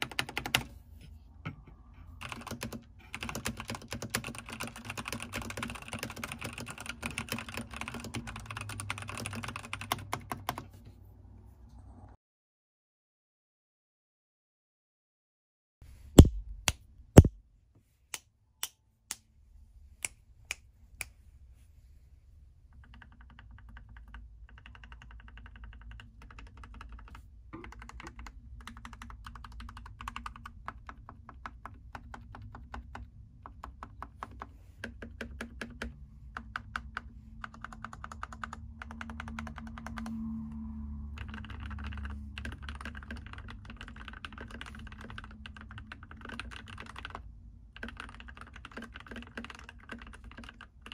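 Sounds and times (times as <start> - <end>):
mechanical keyboard typing: 0.0 - 0.7, 2.2 - 10.7, 22.8 - 40.1, 41.2 - 50.9.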